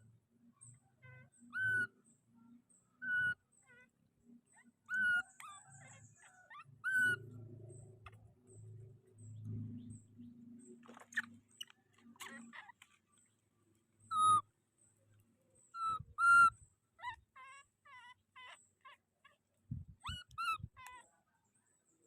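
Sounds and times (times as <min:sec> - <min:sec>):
baby monkey crying: 0:01.0 - 0:01.9, 0:03.0 - 0:03.9, 0:04.5 - 0:07.2, 0:10.9 - 0:12.9, 0:14.1 - 0:14.4, 0:15.8 - 0:19.4, 0:20.0 - 0:21.1.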